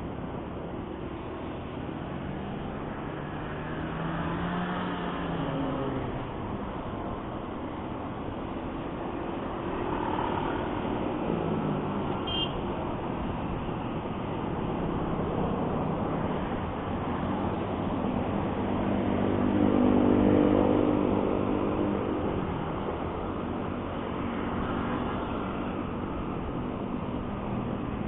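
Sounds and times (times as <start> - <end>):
road and wind noise: 0.0 - 28.0.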